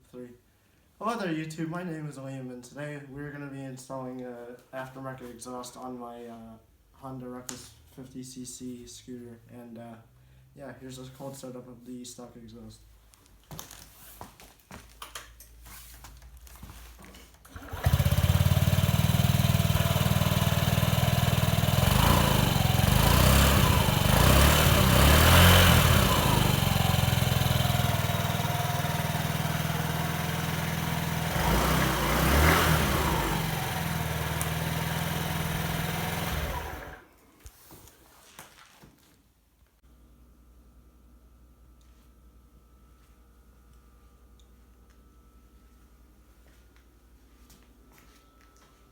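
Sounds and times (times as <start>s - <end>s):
scooter engine idling and revving: 17.5s - 37.0s.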